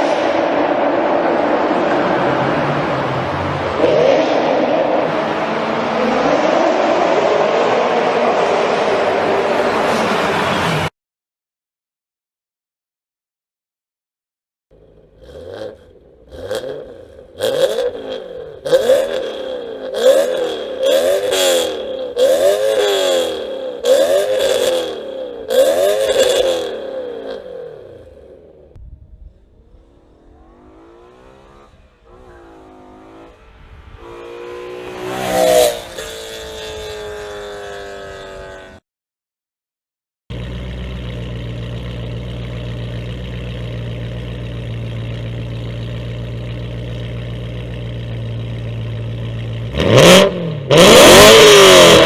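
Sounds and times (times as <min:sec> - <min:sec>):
car engine revving: 0:00.0 - 0:10.9, 0:14.8 - 0:38.8, 0:40.3 - 0:52.0
car engine idling: 0:40.3 - 0:49.8.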